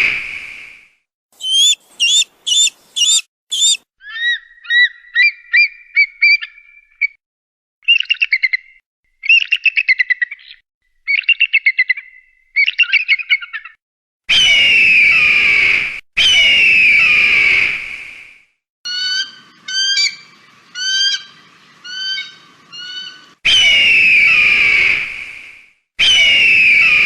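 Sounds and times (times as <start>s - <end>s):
bird of prey calls: 1.4s - 7.1s, 18.9s - 24.8s.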